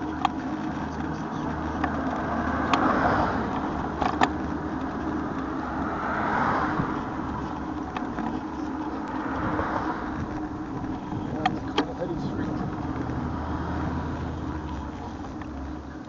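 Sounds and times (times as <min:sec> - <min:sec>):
passing traffic: 0:00.0 - 0:16.0
road noise hum: 0:00.0 - 0:16.0.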